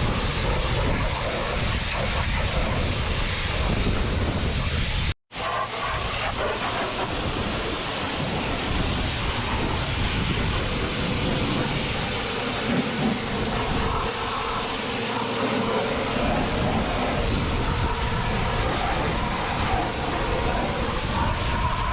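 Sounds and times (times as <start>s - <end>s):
pressure washer pump hum: 11.0s - 21.9s
water jet spraying: 11.0s - 21.9s.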